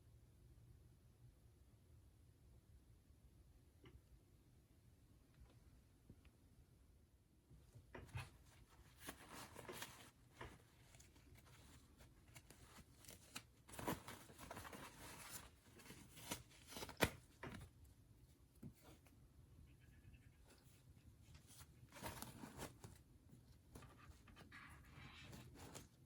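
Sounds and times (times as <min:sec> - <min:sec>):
packaging rustling and crinkling: 0:08.2 - 0:17.7, 0:21.5 - 0:23.0.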